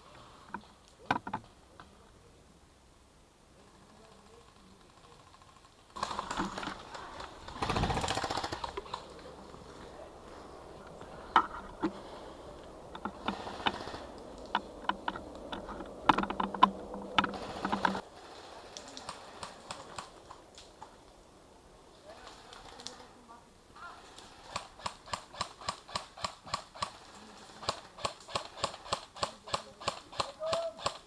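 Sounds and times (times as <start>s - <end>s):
airsoft gun rapid bursts: 7.5s - 9.0s, 24.1s - 31.0s.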